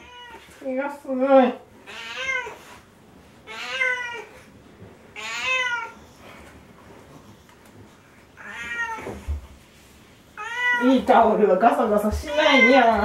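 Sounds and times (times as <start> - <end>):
cat meowing: 0.0 - 0.5, 1.9 - 2.7, 3.4 - 4.4, 5.2 - 6.0, 8.4 - 9.2, 10.4 - 11.0, 12.3 - 13.0.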